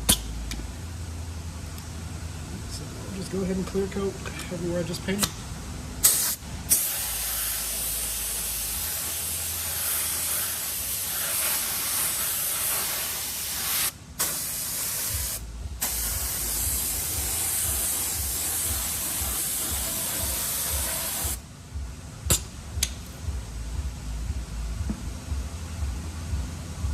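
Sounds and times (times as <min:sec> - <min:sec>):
spray paint hissing: 0:06.0 - 0:21.4.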